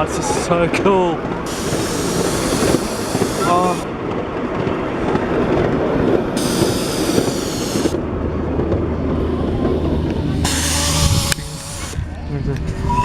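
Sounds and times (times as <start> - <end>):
miniature steam train rumbling: 0.0 - 13.0
high steam hiss: 1.4 - 3.9, 6.3 - 8.0, 10.4 - 12.0.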